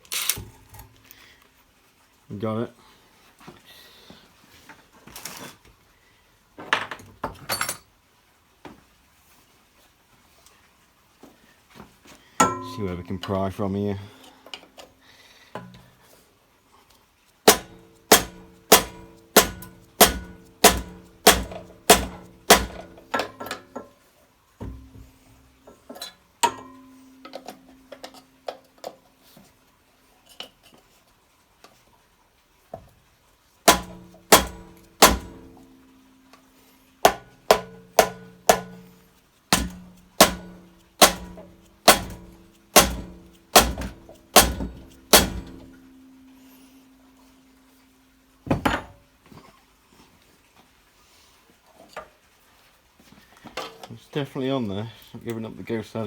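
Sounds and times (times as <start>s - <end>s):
hammer blows on steel: 17.5s - 23.2s, 33.7s - 35.9s, 37.0s - 47.3s.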